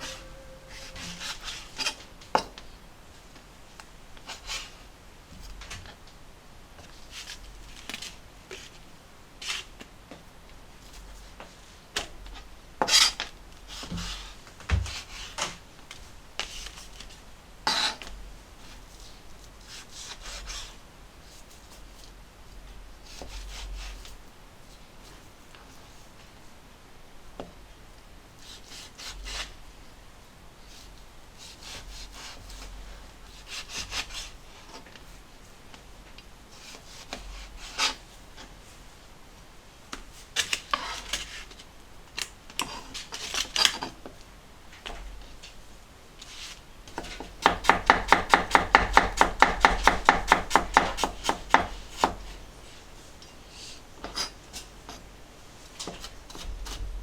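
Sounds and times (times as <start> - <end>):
knife scraping cutting board: 0.0 - 2.1, 17.7 - 18.1
knife chopping on cutting board: 47.0 - 52.2.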